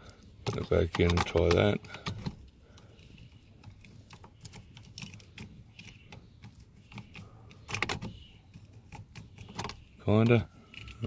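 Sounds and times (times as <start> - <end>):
key clicking in ignition lock: 0.4 - 2.5, 3.6 - 11.0.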